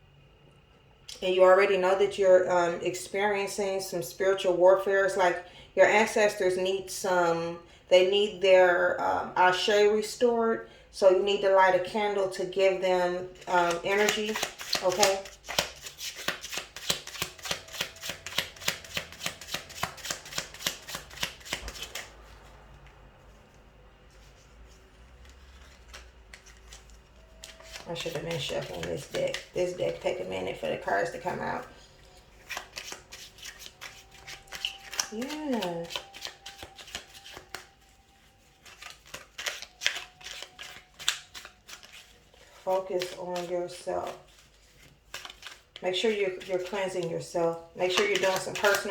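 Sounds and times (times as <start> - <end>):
deck of cards shuffled by hand: 13.4 - 22.1, 24.2 - 47.1, 47.8 - 48.9.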